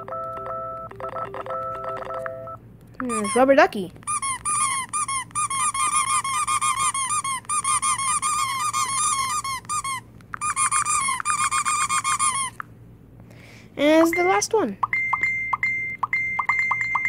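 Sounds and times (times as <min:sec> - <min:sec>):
rubber duck squeak keypresses: 0:03.0 - 0:12.6.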